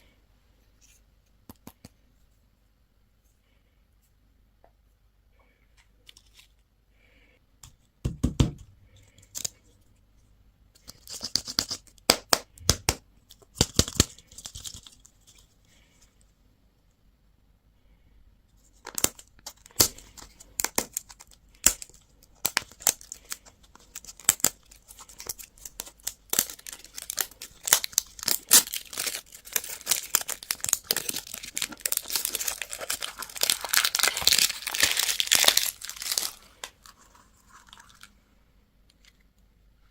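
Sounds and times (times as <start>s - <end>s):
candy wrapper crinkling and tearing: 13.3s - 15.4s, 18.8s - 38.2s.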